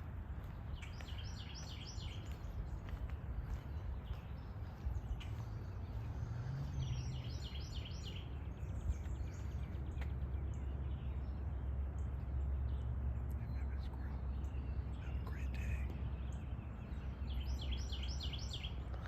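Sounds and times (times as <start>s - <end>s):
bird chirping: 0.0s - 19.0s
low outdoor rumble: 0.0s - 19.0s.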